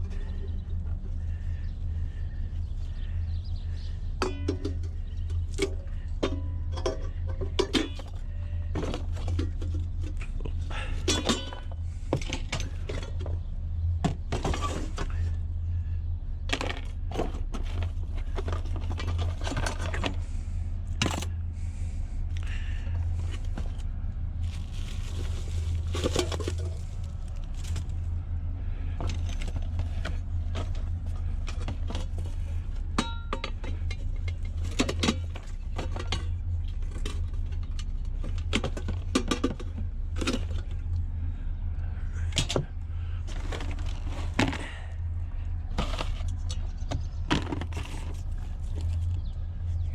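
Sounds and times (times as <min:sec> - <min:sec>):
steady low hum: 0:00.0 - 0:49.9
scrap metal clanking: 0:04.2 - 0:13.3.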